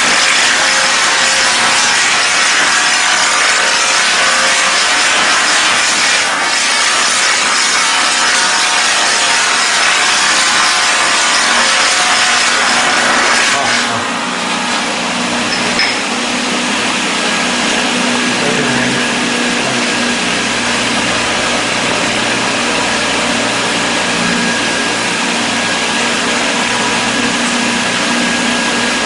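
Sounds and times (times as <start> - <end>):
workshop machinery running: 0.0 - 29.0.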